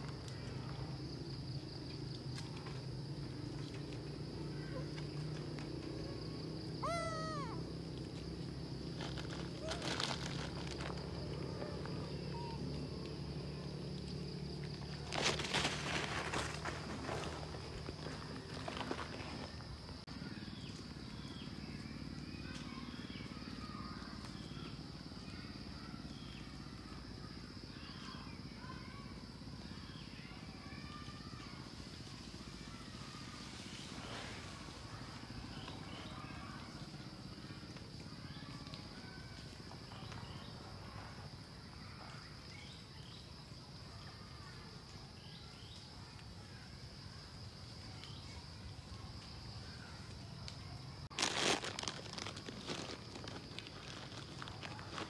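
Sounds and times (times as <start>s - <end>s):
high chirping animal calls: 6.8s - 7.6s.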